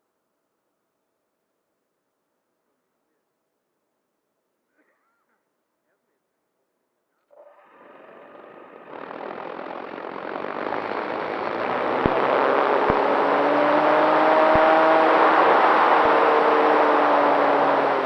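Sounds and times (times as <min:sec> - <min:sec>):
electric motor and propeller: 0:07.3 - 0:18.0
sharp clicks: 0:08.8 - 0:13.2.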